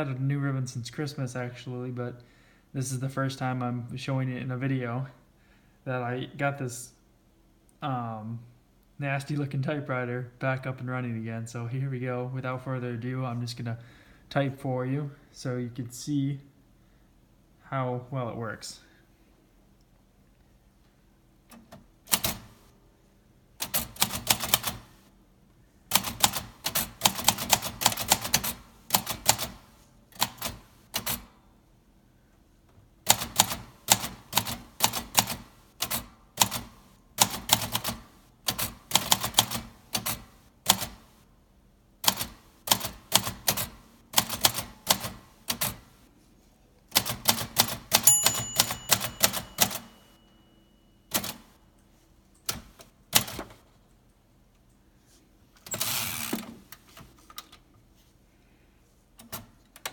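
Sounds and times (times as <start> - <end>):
manual typewriter typing: 21.5 - 22.6, 23.6 - 25.0, 25.9 - 31.3, 33.1 - 41.1, 42.0 - 45.9, 46.9 - 50.2, 51.1 - 51.5, 52.4 - 53.6, 55.7 - 56.4.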